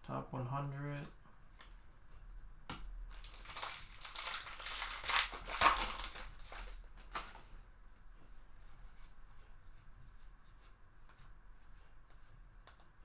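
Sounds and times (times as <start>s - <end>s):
wrapper crinkling and tearing: 3.1s - 7.6s.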